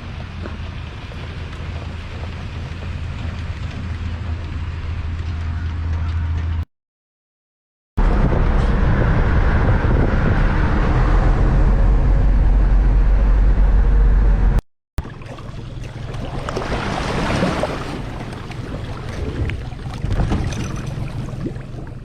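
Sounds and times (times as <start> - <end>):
motorboat engine drone: 0.0 - 6.6, 8.0 - 22.0
rushing wind: 8.0 - 14.6
water rushing: 15.0 - 22.0.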